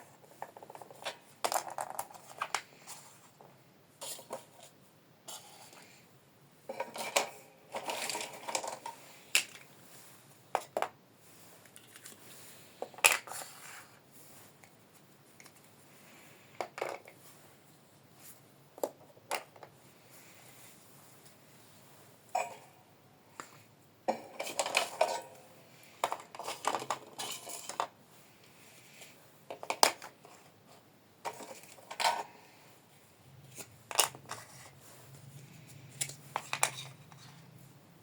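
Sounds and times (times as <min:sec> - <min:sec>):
scraping and rustling: 0:06.7 - 0:18.5, 0:24.1 - 0:32.6, 0:33.4 - 0:37.7.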